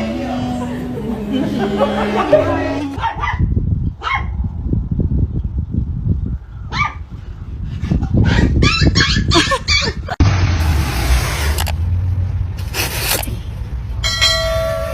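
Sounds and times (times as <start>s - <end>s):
dog barking and yipping: 3.0s - 4.4s, 6.7s - 7.0s, 8.2s - 10.0s.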